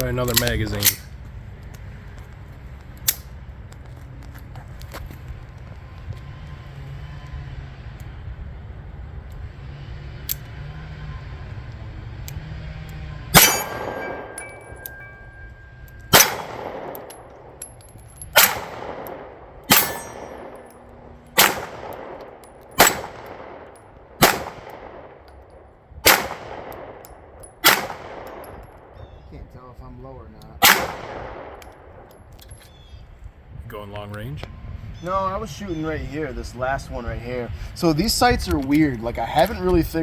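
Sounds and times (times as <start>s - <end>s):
pistol shots echoing: 13.3s - 15.2s, 16.0s - 17.6s, 18.3s - 25.3s, 26.0s - 29.0s, 30.6s - 32.1s
faint metallic ring: 13.4s - 16.1s.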